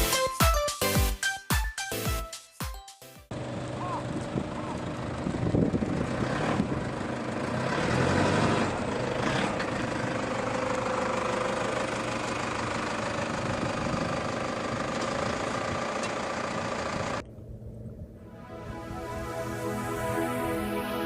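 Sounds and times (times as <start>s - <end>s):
vehicle engine running: 3.3s - 18.3s.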